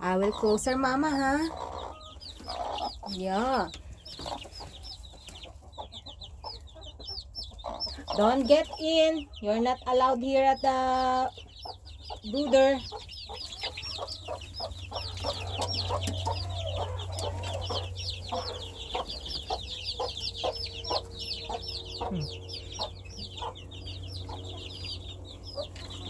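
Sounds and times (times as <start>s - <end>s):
chicks peeping: 0.0s - 26.0s
hen clucking low: 10.8s - 26.0s
steady low hum: 10.8s - 26.0s.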